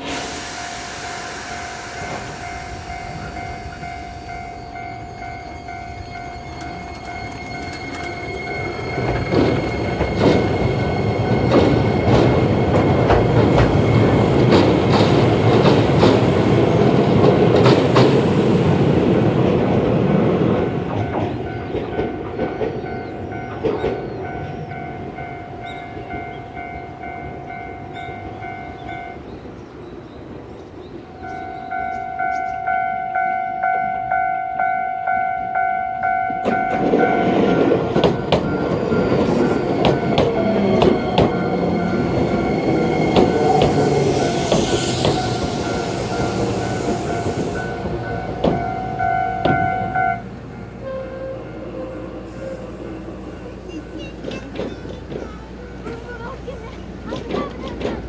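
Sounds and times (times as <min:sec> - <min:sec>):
train wheels clattering: 0:00.0 - 0:28.8, 0:36.0 - 0:50.5, 0:53.6 - 0:58.0
electric train pulling away: 0:00.0 - 0:58.0
level crossing alarm ringing: 0:01.7 - 0:15.1, 0:31.2 - 0:51.8.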